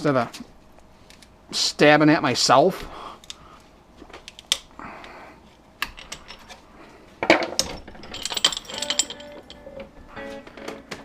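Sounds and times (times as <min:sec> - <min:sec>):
metal clatter: 0:07.2 - 0:09.9.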